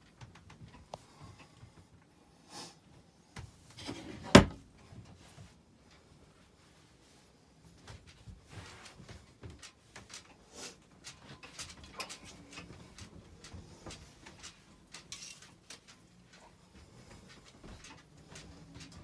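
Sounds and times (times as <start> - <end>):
faint clicks and knocks: 7.8 - 19.0.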